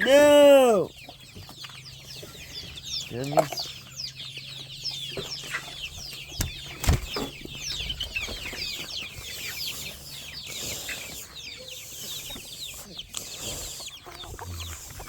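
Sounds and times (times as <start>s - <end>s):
chickens clucking and chirping: 0.0s - 15.0s.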